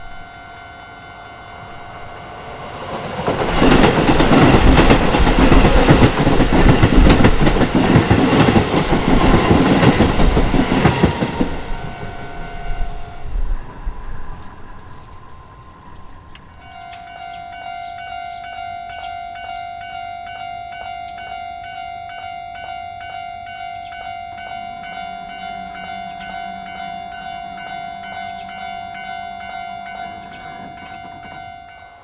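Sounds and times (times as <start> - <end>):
train rumbling past: 0.0 - 18.6, 23.1 - 31.8
crossing warning bell: 0.0 - 32.0
wheels clacking over rail joints: 1.7 - 17.1, 29.9 - 32.0.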